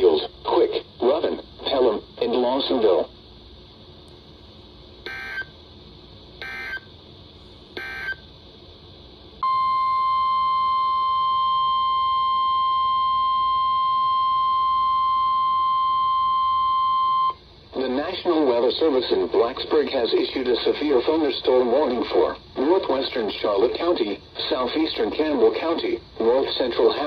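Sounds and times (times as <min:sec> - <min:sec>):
loud steady alert tone: 0:05.1 - 0:05.5, 0:06.4 - 0:06.9, 0:07.8 - 0:08.2.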